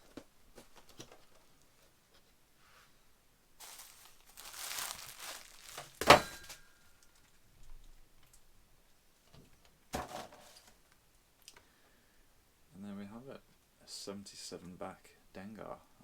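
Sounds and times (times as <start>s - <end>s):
bubble wrap snap: 3.6s - 6.6s
bubble wrap crinkling: 3.6s - 6.8s.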